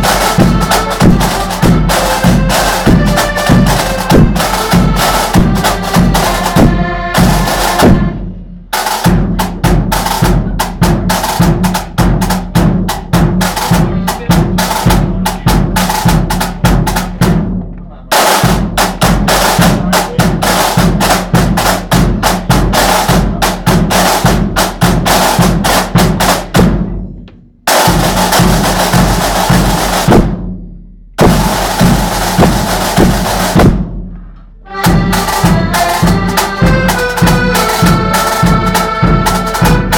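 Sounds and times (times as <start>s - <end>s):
accordion chords: 0.0s - 17.0s, 34.6s - 39.9s
snare drum rhythms and rolls: 0.0s - 27.0s, 27.7s - 30.6s, 31.2s - 34.2s, 34.8s - 39.9s
bass drum beat: 0.0s - 39.9s.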